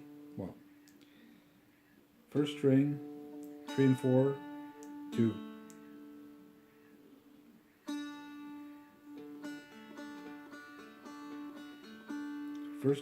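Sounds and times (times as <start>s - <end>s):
fingerpicked dulcimer: 2.6s - 5.8s, 7.9s - 13.0s.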